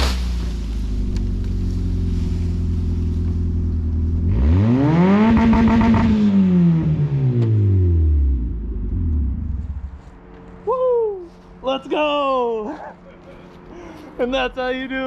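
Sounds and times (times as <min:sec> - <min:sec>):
car engine idling and revving: 0:00.0 - 0:10.6.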